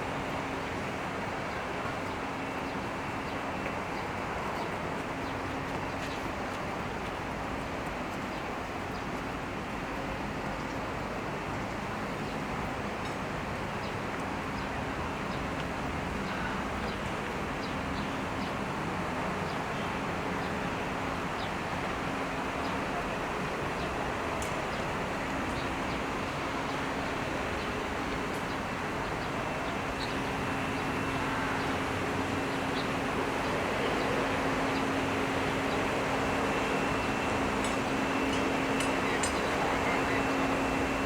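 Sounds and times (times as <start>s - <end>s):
traffic noise: 9.7s - 41.0s.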